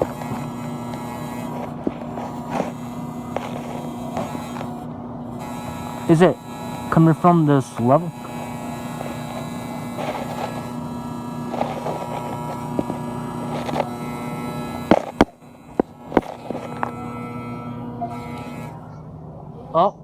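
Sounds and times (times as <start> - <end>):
refrigeration compressor humming: 0.0 - 19.6.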